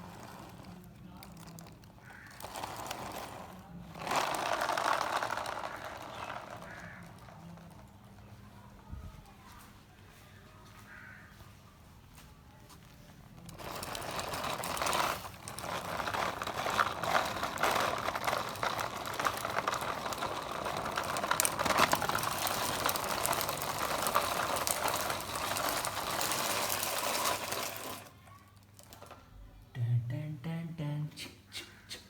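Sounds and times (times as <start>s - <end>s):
toy car motor whirring: 13.5s - 28.1s.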